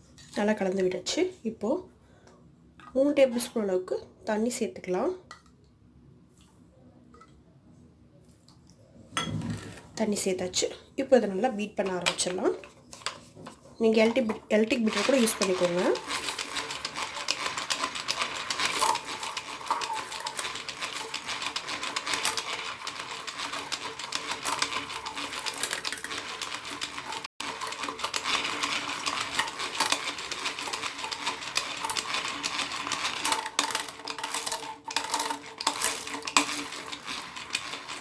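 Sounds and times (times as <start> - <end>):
hand beater whipping coffee: 14.1 - 38.0.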